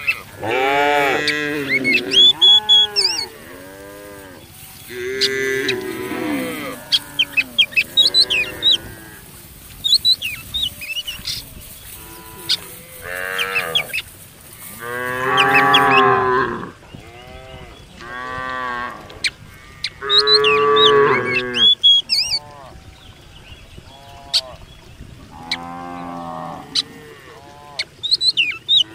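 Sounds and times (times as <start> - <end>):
cattle mooing: 0.1 - 9.4, 10.6 - 14.0, 14.6 - 21.7.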